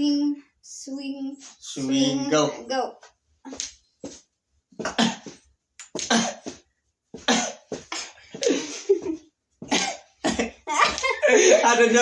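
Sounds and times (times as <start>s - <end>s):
people grunting with effort: 4.8s - 5.4s, 6.0s - 6.6s.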